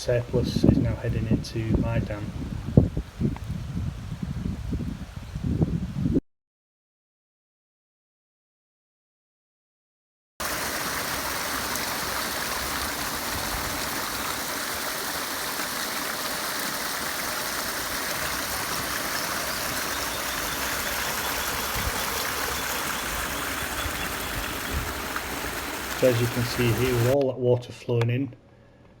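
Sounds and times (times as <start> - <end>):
floodwater rushing into a dam: 10.4 - 27.2.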